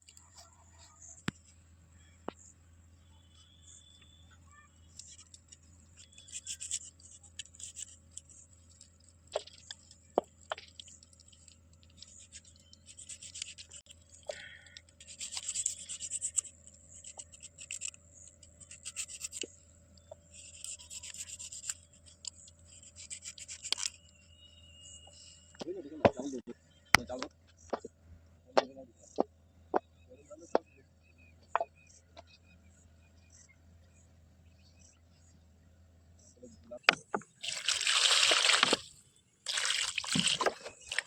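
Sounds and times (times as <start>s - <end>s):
scraping chicken feet: 37.4s - 41.0s.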